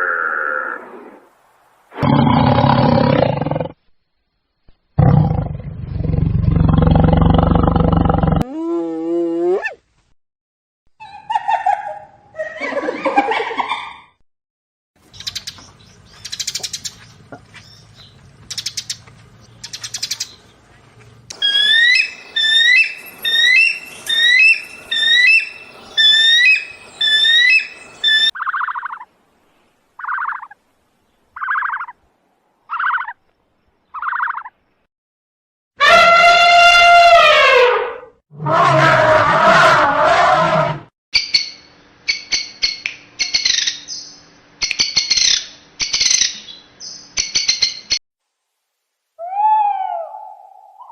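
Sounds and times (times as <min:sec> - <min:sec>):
bird calls: 0:15.0 - 0:29.1, 0:30.0 - 0:30.6, 0:31.4 - 0:32.0, 0:33.9 - 0:34.5.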